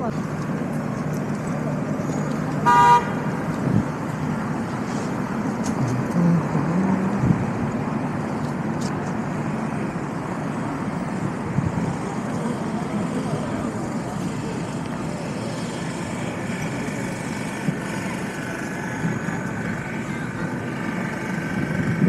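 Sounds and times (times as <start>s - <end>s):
traffic hum: 0.0s - 22.0s
car horn beep: 2.6s - 3.2s
crowd: 11.7s - 21.7s.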